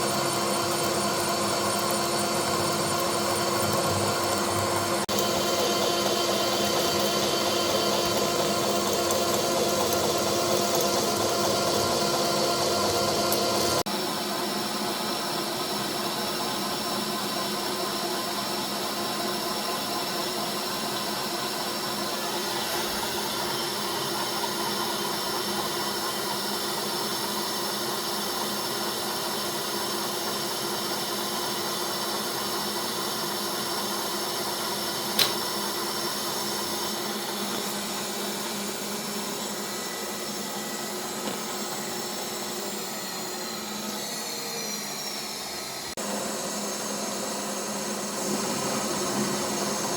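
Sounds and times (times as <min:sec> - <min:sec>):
sharp click: 0:35.2 - 0:35.4.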